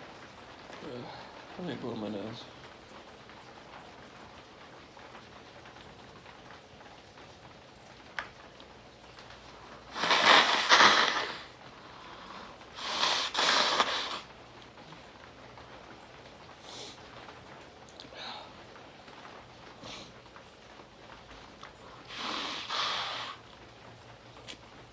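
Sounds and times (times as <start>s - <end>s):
man blowing his nose: 9.9s - 11.6s, 12.8s - 14.3s, 22.1s - 23.4s.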